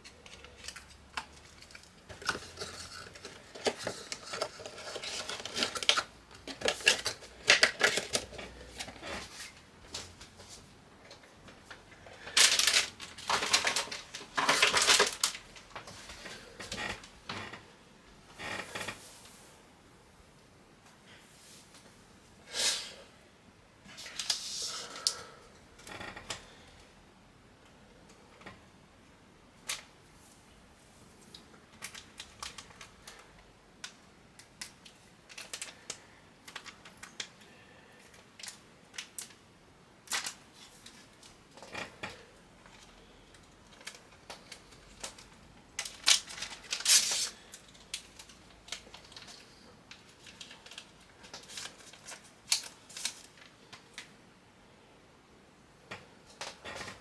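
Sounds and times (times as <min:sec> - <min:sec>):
rustling and clattering: 0:00.0 - 0:17.7.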